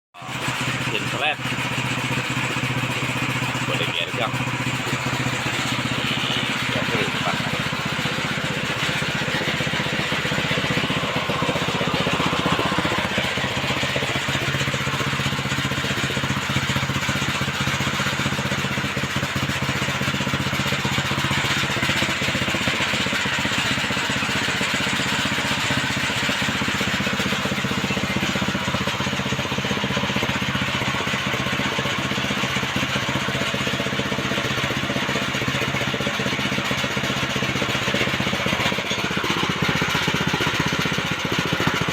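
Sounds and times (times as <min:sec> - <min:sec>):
threshing machine engine running: 0:00.2 - 0:41.9.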